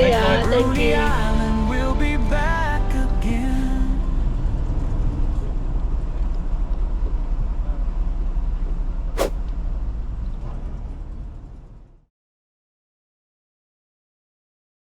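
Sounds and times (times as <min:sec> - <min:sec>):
vehicle engine rumbling: 0:00.0 - 0:12.0
brief sharp sound: 0:09.2 - 0:09.4.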